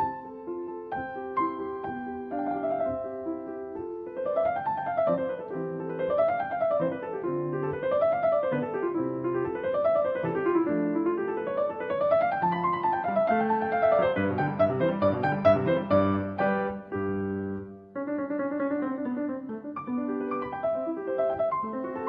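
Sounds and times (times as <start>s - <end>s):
piano music: 0.0s - 22.0s.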